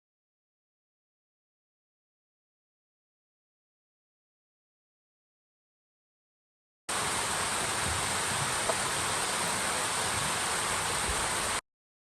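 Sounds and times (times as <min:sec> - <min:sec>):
waterfall and stream rushing: 0:06.9 - 0:11.6.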